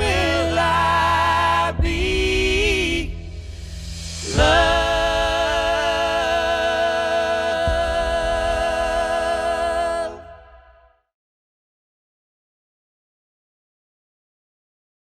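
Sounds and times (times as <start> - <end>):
musical accompaniment: 0.0 - 10.3.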